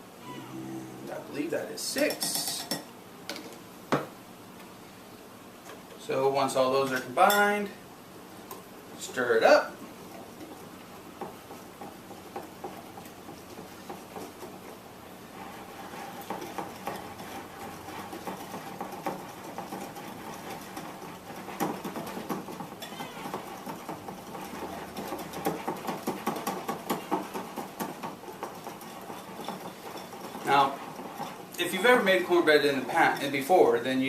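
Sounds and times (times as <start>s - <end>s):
spoon stirring batter in a bowl: 10.0s - 33.6s.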